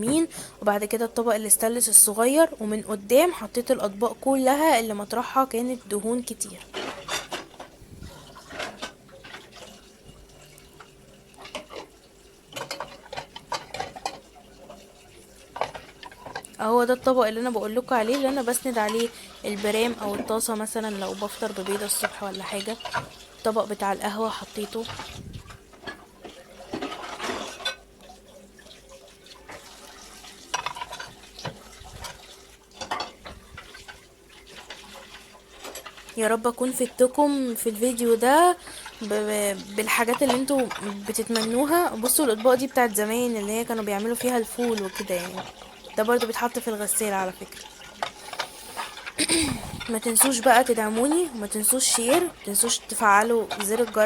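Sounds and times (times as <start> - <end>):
faint steady hum: 0.0 - 54.0.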